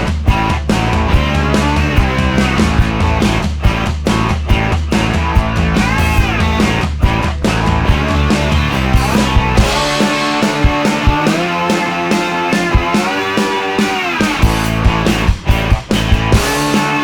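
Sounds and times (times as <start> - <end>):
rock music with guitar and drums: 0.0 - 17.0.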